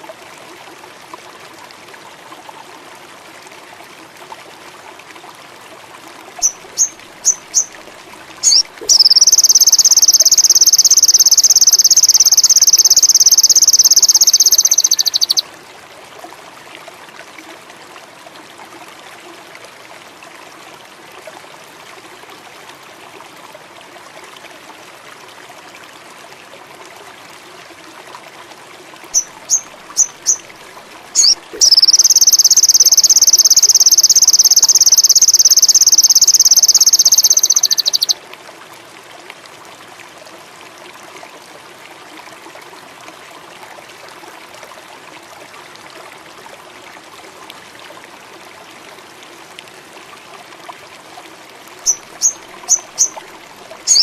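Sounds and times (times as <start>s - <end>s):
bird chirps: 6.4s - 7.7s, 8.4s - 15.4s, 29.2s - 30.4s, 31.2s - 38.2s, 51.8s - 53.2s
rapid high-pitched bird trill: 8.4s - 15.4s, 31.2s - 38.2s, 51.9s - 53.2s.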